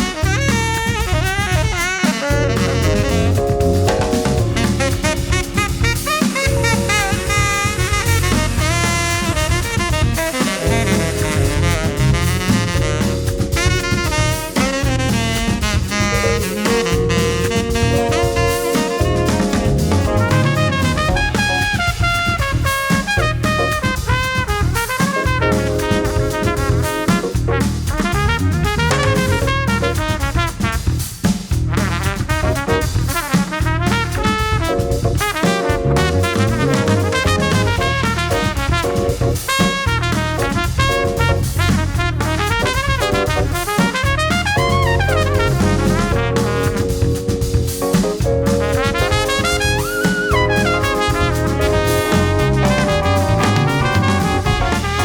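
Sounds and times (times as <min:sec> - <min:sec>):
upbeat swing jazz with brass: 0:00.0 - 0:55.0.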